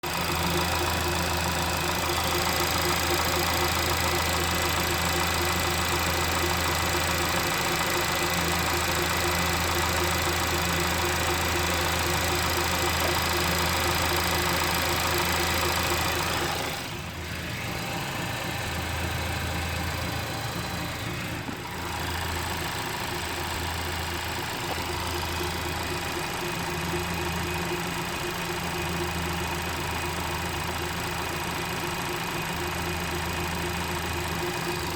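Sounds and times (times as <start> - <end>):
car engine idling: 0.0 - 34.9.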